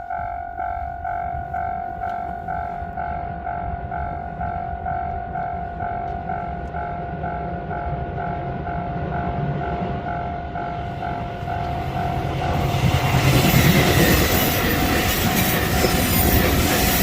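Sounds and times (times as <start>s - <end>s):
train rumble: 0.0s - 17.0s
wheels clacking over rail joints: 11.0s - 17.0s.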